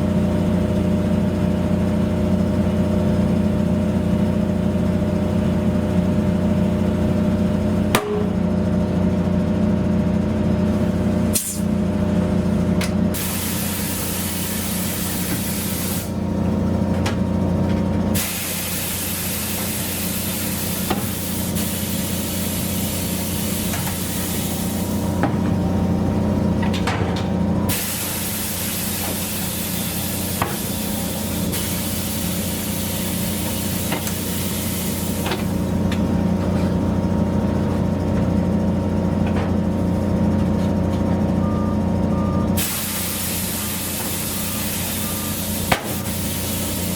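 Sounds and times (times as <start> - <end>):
low machine hum: 0.0 - 46.9
compressed air hissing: 11.3 - 11.7, 13.2 - 16.2, 18.1 - 25.2, 27.7 - 35.9, 42.6 - 46.9.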